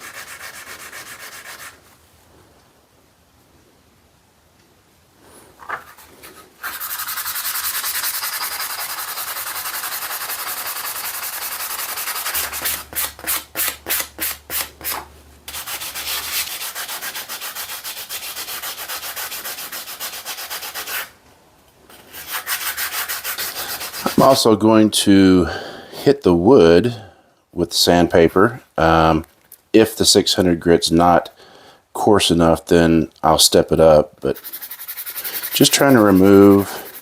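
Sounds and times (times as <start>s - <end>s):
sanding pad rubbing metal: 0.0s - 1.8s, 6.6s - 21.1s, 22.0s - 24.4s, 34.3s - 37.0s.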